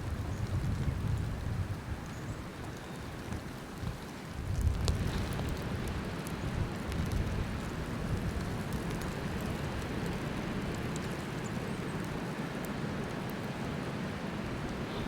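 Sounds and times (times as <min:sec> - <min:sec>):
storm wind blowing: 0:00.0 - 0:03.2.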